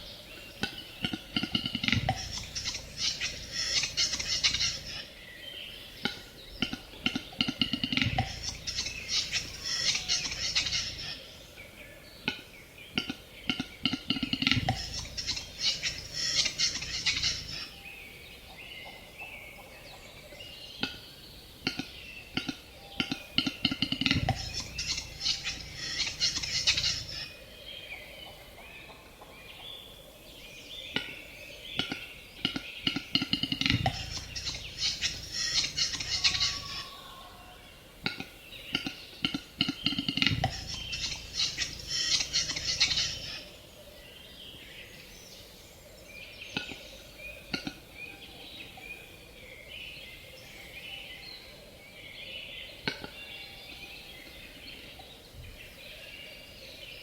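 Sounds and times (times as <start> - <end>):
bird clicking and scraping calls: 0.6 - 5.0, 6.0 - 11.1, 13.0 - 17.6, 21.6 - 27.2, 31.8 - 37.0, 38.1 - 43.4
low thumps: 1.6 - 4.8, 24.0 - 27.1.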